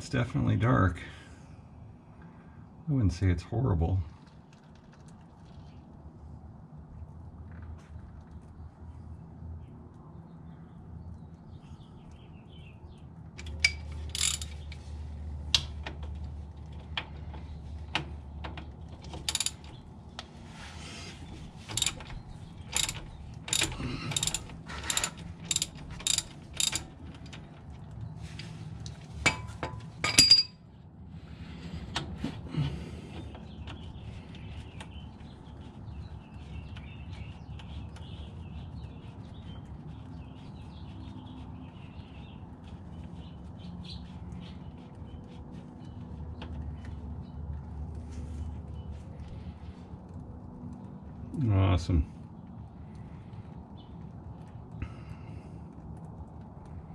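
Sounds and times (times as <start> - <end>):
metallic clicks of hand tools: 22.7 - 27.4.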